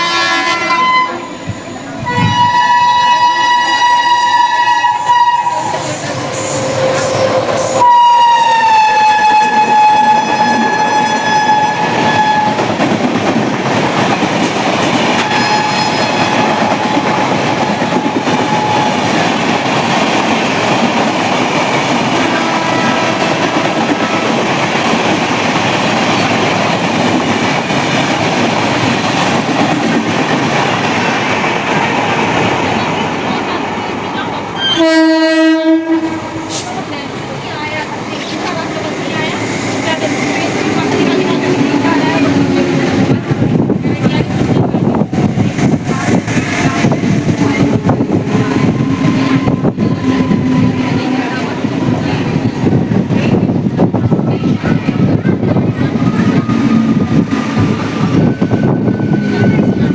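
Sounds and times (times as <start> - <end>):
train horn blast: 0.0 - 12.8, 15.1 - 19.3, 22.2 - 24.5, 34.6 - 36.7, 47.3 - 52.3
train wheels rumbling on track: 0.0 - 59.9.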